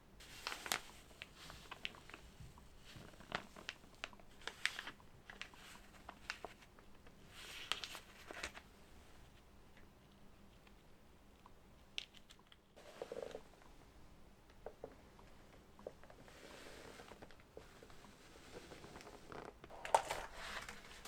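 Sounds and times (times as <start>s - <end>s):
packaging rustling: 0.2s - 8.7s, 15.8s - 21.0s.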